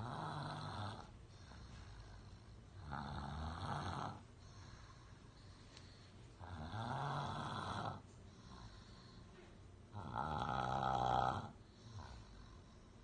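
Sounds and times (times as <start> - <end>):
person snoring: 0.0 - 2.2, 2.8 - 5.0, 6.4 - 9.1, 9.9 - 12.6.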